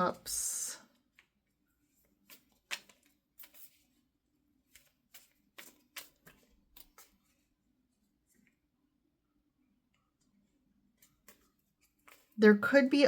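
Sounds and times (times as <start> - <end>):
cards being handled: 1.0 - 4.0, 4.6 - 7.5, 10.2 - 12.4.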